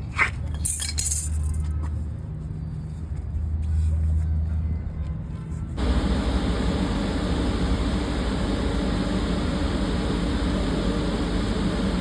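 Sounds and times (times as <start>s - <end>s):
air handling blower running: 5.8s - 12.0s.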